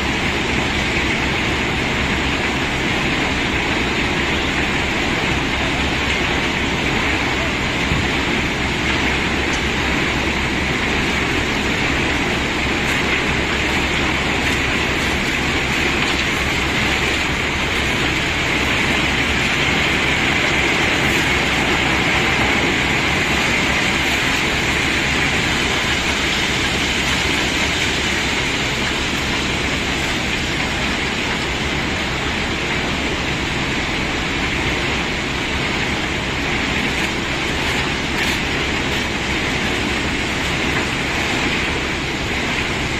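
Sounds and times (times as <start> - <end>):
cobblestones pouring and rattling: 9.6 - 30.8, 36.2 - 42.8.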